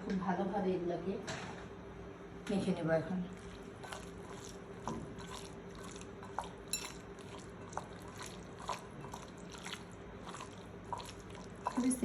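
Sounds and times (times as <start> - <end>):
wet squelching of mixing: 3.2 - 12.0.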